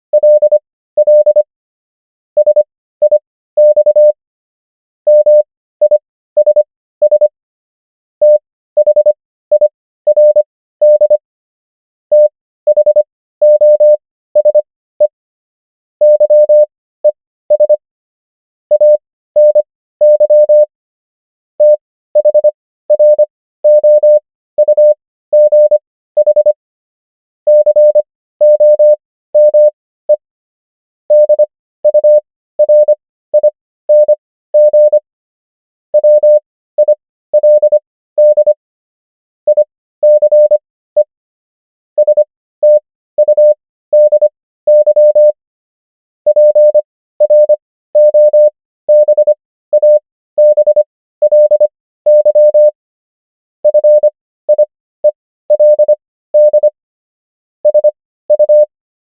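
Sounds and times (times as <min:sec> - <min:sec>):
morse code beeps: 0:00.2 - 0:01.5, 0:02.4 - 0:04.2, 0:05.1 - 0:07.3, 0:08.2 - 0:11.2, 0:12.1 - 0:15.2, 0:16.0 - 0:17.8, 0:18.7 - 0:20.7, 0:21.6 - 0:26.6, 0:27.5 - 0:30.2, 0:31.1 - 0:35.0, 0:36.0 - 0:38.6, 0:39.5 - 0:41.1, 0:42.0 - 0:45.4, 0:46.3 - 0:52.8, 0:53.6 - 0:56.8, 0:57.6 - 0:58.7.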